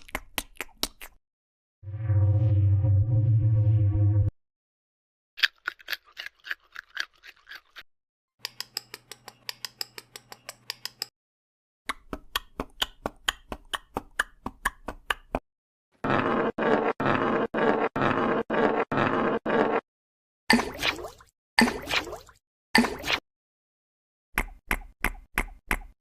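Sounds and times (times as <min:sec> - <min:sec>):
buzzing tone: 0:01.8 - 0:04.3.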